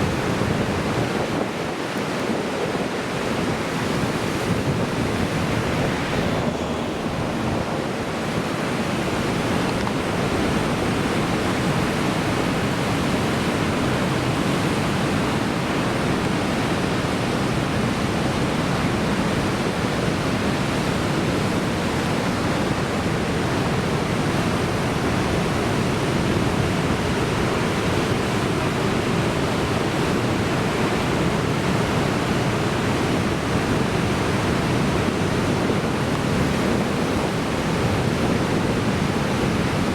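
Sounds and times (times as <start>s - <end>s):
heavy surf breaking: 0.0s - 39.9s
wind: 0.0s - 39.9s.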